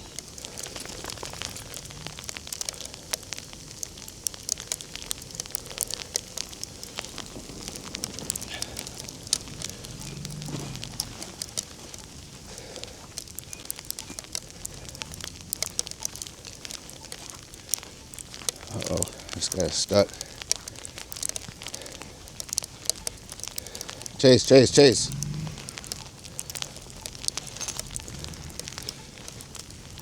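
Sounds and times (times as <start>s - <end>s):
car wheels spinning whine: 0.0s - 12.5s, 24.0s - 30.0s
snow crackling and crunching: 0.0s - 30.0s.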